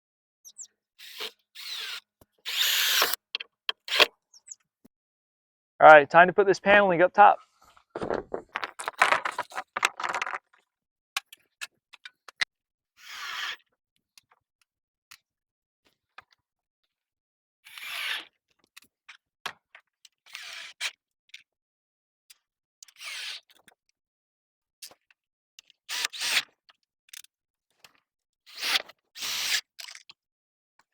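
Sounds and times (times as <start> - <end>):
plastic roofing panels scraping: 7.6 - 10.4.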